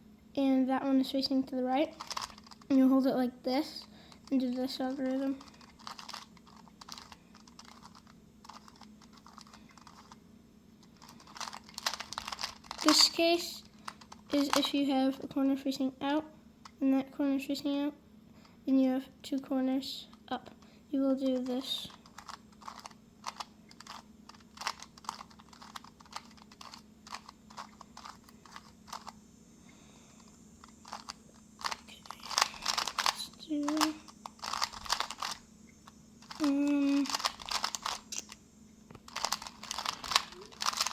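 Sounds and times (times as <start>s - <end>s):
plastic puzzle cube clicking: 2.0s - 2.8s, 4.1s - 10.2s, 10.8s - 14.7s, 21.3s - 29.2s, 30.6s - 35.4s, 36.2s - 38.4s, 39.0s - 40.9s.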